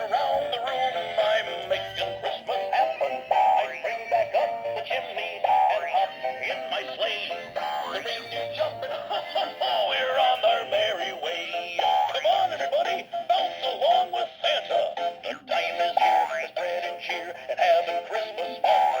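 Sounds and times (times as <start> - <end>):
toy singing through tinny speaker: 0.0 - 19.0.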